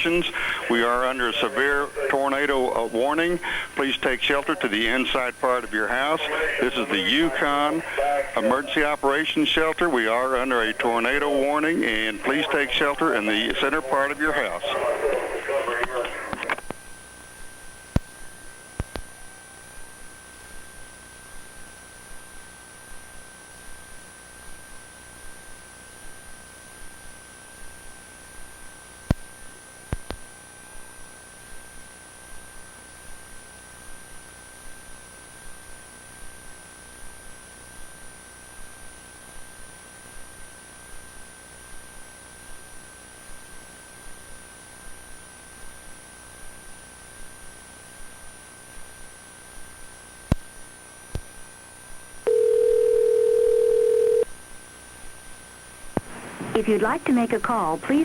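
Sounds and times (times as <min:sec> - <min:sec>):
telephone line hiss: 0:00.0 - 0:16.6, 0:52.3 - 0:54.3, 0:56.0 - 0:58.0.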